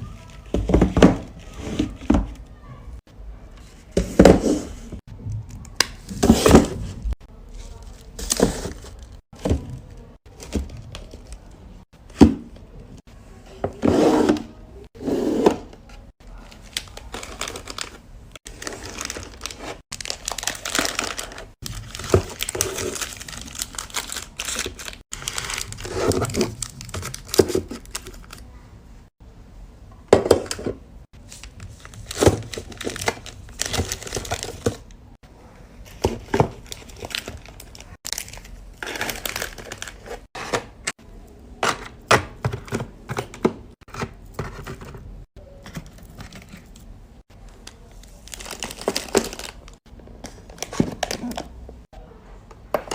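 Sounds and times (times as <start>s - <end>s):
plastic wrappers crinkling: 16.3s - 28.5s, 31.2s - 34.9s, 35.9s - 40.3s, 47.4s - 51.5s.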